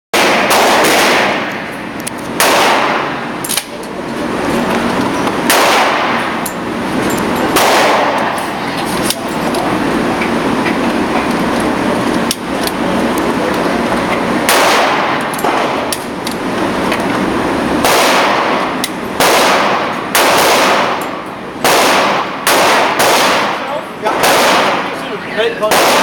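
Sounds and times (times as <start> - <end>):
gunshots: 0.2 - 1.7, 2.3 - 3.8, 5.4 - 6.4, 7.5 - 8.4, 14.4 - 15.9, 17.8 - 26.0.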